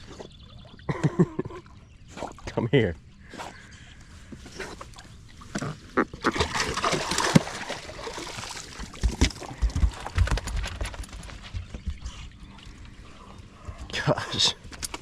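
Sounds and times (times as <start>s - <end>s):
water splashing and sloshing: 4.2s - 15.0s.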